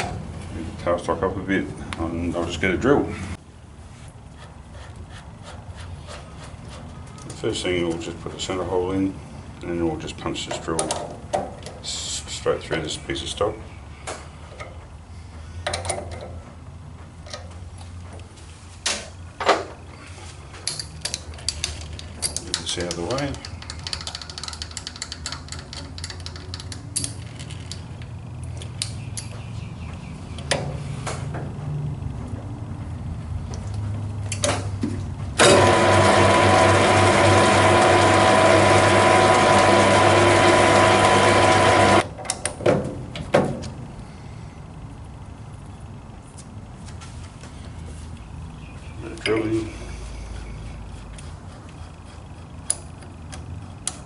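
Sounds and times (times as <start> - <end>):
metal parts clicking and knocking: 20.6 - 29.4
lathe motor whine: 35.4 - 42.0
steady low hum: 37.9 - 54.0.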